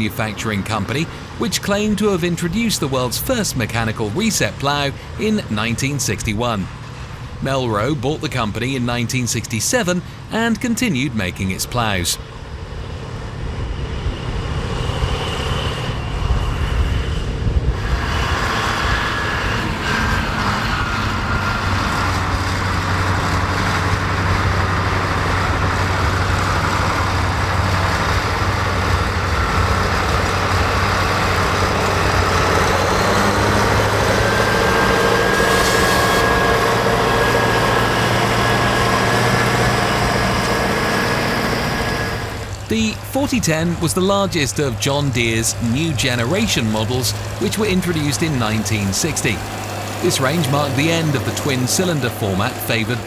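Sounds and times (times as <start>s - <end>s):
steady whine: 0.0s - 53.0s
tractor engine running under load: 17.6s - 53.0s.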